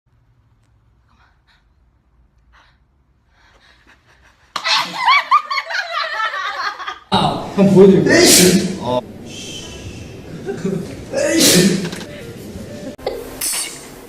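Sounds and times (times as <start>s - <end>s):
person sneezing: 10.5s - 12.1s.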